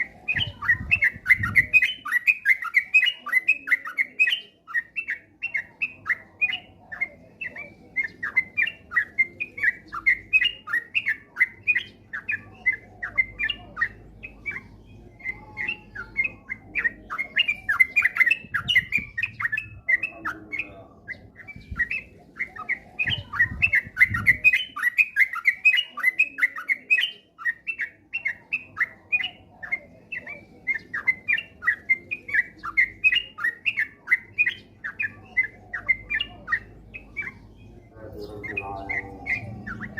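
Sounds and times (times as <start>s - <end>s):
bulbul singing bubbly chattering notes: 30.7s - 39.9s.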